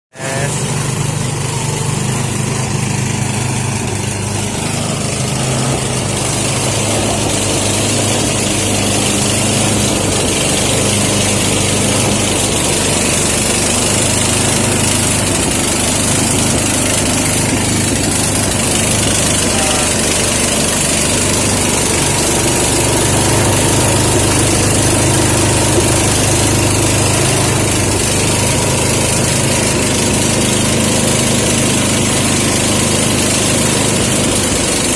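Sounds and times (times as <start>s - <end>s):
rice thresher engine running: 0.1s - 34.9s.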